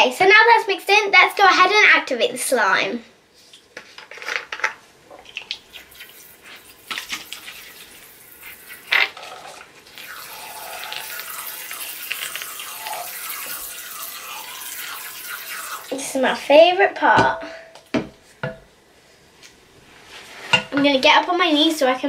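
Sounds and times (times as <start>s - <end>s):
liquid pouring from bottle: 5.2s - 16.0s.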